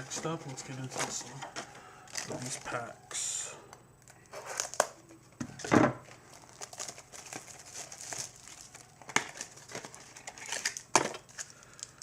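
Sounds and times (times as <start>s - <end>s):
plastic wrapper crinkling: 0.1s - 2.9s, 6.0s - 12.0s.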